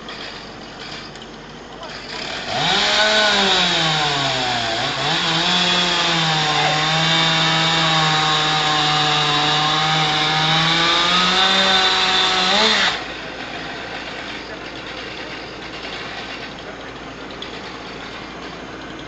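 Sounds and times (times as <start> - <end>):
chainsaw cutting wood: 1.8 - 16.6.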